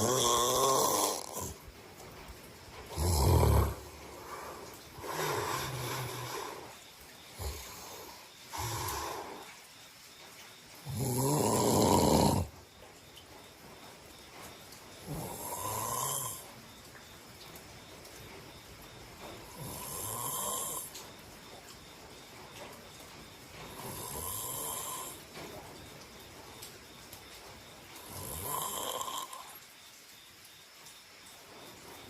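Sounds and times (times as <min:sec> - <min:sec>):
person snoring: 0:00.0 - 0:01.6, 0:02.9 - 0:06.8, 0:07.4 - 0:09.5, 0:10.8 - 0:12.5, 0:15.0 - 0:16.5, 0:19.6 - 0:20.9, 0:23.8 - 0:25.2, 0:28.1 - 0:29.6.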